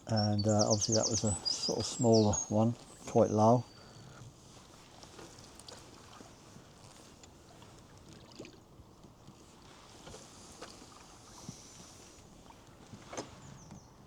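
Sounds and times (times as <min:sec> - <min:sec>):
paddle splashes and drips: 0:01.0 - 0:14.0.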